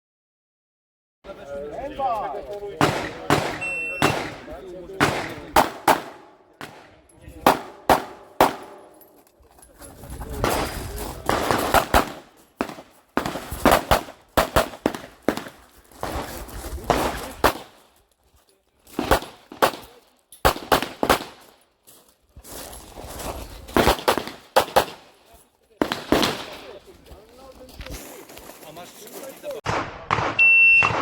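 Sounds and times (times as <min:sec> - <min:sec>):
pistol shots: 0:02.8 - 0:09.1, 0:10.5 - 0:17.8, 0:19.0 - 0:21.6, 0:23.8 - 0:25.1, 0:25.8 - 0:26.7, 0:29.6 - 0:31.0.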